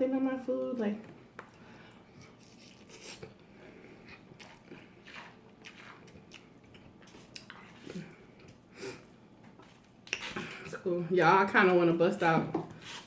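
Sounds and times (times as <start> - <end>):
faint chewing: 1.4 - 10.8.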